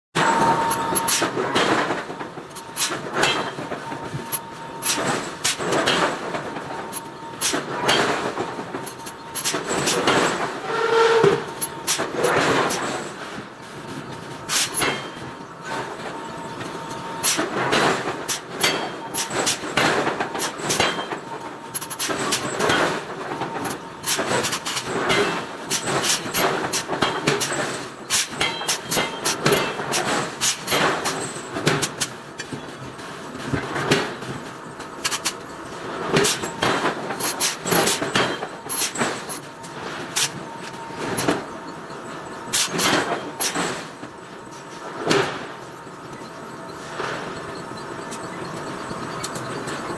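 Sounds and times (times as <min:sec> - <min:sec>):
metal clanks and knocks: 0:00.2 - 0:35.5, 0:36.1 - 0:46.4
faint steady machine tone: 0:40.5 - 0:49.9.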